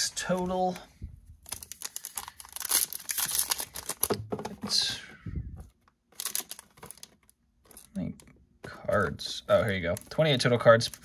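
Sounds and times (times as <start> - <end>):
wrapper tearing: 1.4 - 4.1, 6.2 - 7.1
plastic wrapper crinkling: 1.4 - 4.2, 6.1 - 7.9.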